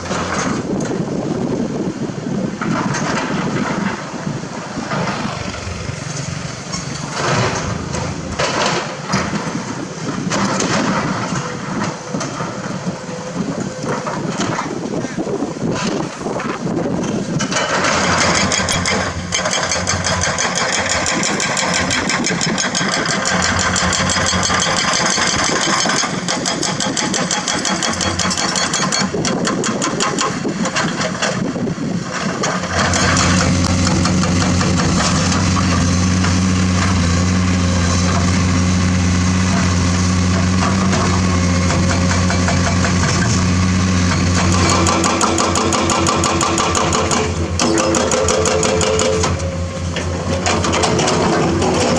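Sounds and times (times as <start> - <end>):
diesel engine droning: 0.0 - 19.4, 31.6 - 51.9.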